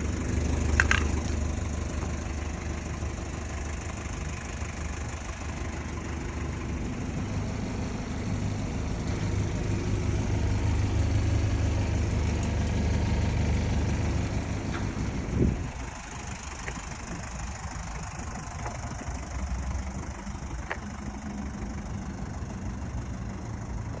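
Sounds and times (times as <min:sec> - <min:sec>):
diesel engine running: 0:00.0 - 0:24.0.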